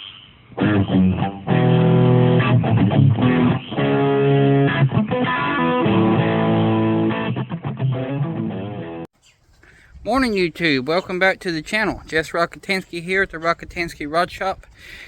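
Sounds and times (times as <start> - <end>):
electric guitar and bass chords: 0.0 - 9.1.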